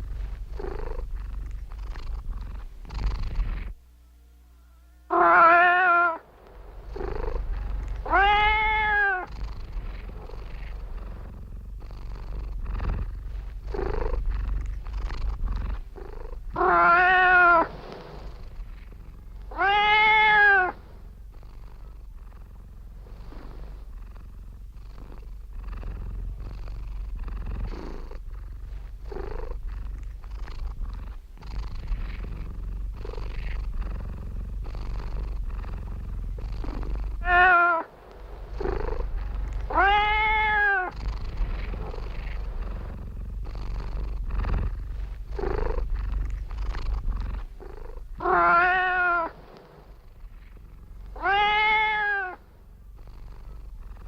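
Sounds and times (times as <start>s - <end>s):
cat purring: 0.0s - 3.8s, 5.1s - 54.0s
cat meowing: 4.6s - 6.2s, 6.9s - 9.3s, 16.6s - 17.7s, 19.5s - 20.8s, 37.2s - 42.1s, 48.2s - 49.4s, 51.1s - 52.4s.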